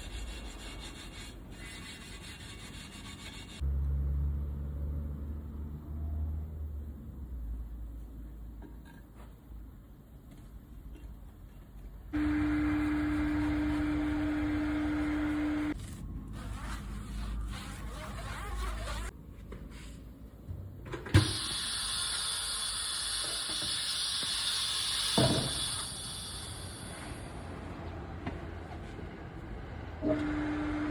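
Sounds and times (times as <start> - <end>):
motor hum: 12.1 - 15.8
loud steady air hiss: 21.3 - 27.0.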